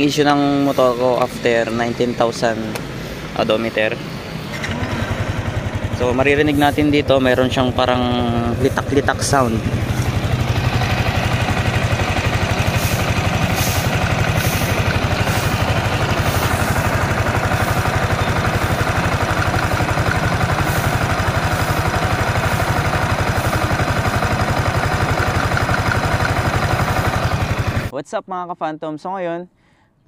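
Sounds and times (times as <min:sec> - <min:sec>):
motorcycle engine idling: 0:00.0 - 0:27.9
rapid ticking clatter: 0:05.5 - 0:27.9.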